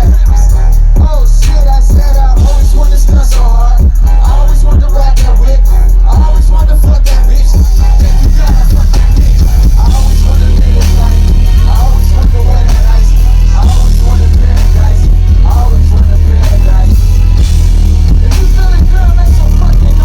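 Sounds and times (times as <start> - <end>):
loud live concert music: 0.0 - 20.0.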